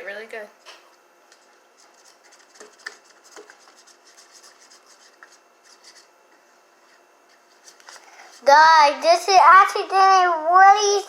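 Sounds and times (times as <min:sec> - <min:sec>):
spoon scraping slime in bowl: 0:00.9 - 0:06.1, 0:06.9 - 0:08.4.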